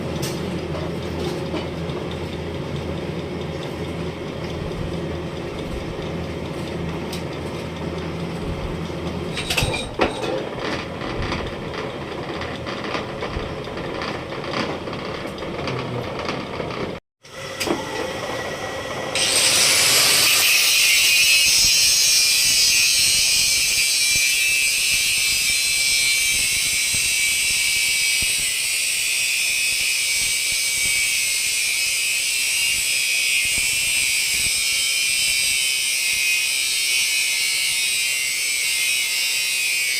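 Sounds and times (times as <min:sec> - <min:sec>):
workshop machinery running: 0:00.0 - 0:39.9
power tool hissing on metal: 0:17.3 - 0:29.0.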